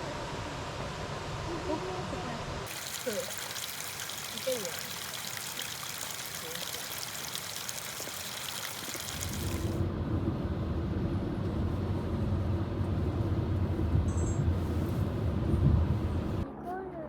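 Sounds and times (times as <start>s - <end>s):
water pouring and splashing: 2.7s - 9.8s.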